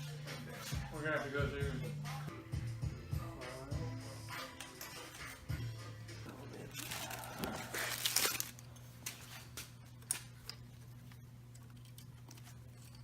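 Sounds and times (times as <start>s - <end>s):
wiring harness rustling: 6.2s - 13.0s.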